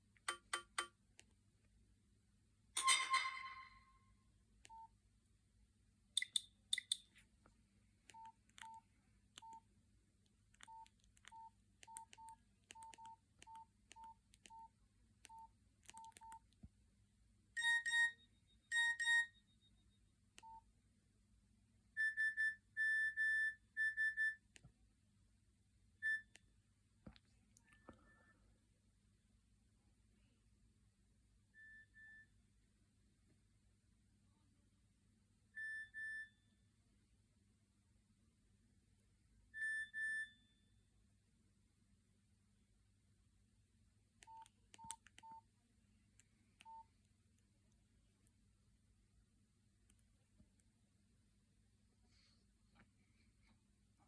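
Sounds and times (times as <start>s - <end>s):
keypad beeps: 9.4s - 9.6s, 10.6s - 16.4s, 17.6s - 19.4s, 44.2s - 45.4s, 46.6s - 46.9s.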